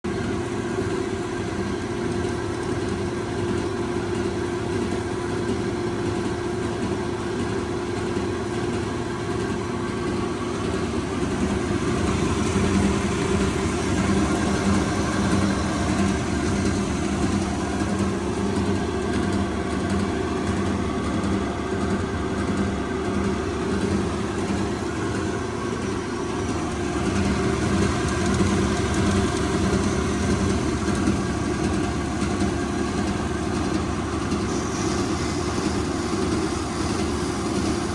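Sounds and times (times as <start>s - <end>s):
band saw machine humming: 9.2s - 37.9s.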